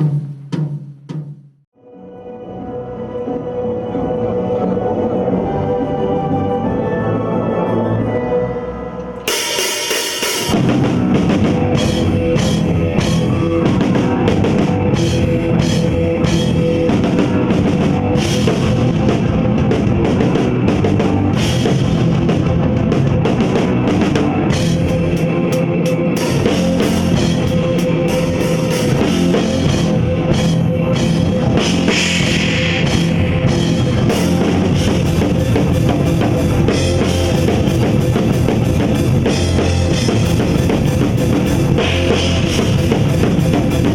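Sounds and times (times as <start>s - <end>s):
drum kit playing rock beat: 0.0s - 1.5s, 9.2s - 43.9s
cymbals ringing: 8.0s - 10.8s.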